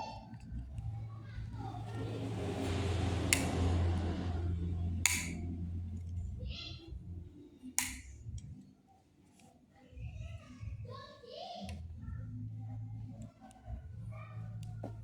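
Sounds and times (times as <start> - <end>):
sharp clicks: 5.1 - 5.4, 7.8 - 8.2.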